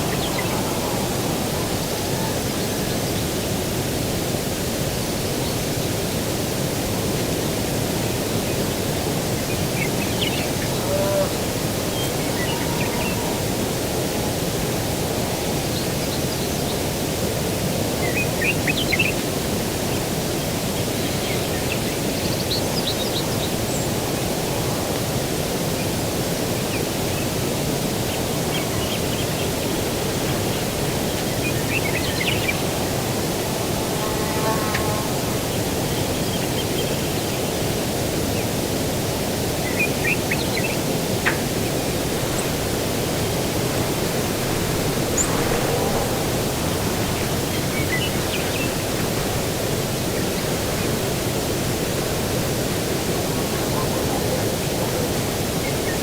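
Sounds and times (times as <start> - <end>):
breeze rushing: 0.0 - 4.5, 40.8 - 55.8
distant ocean surf: 0.0 - 38.4, 39.0 - 56.0
songbird chirping: 39.7 - 49.3.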